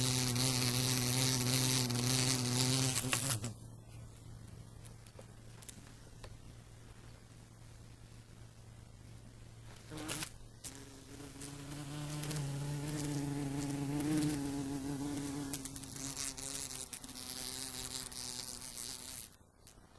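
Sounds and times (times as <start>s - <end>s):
wasp buzzing: 0.0s - 3.6s, 9.8s - 19.9s.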